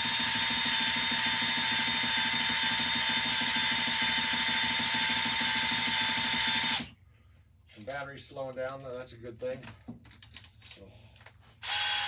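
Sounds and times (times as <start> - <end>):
cordless drill spinning hone: 0.0 - 6.9, 11.6 - 12.0.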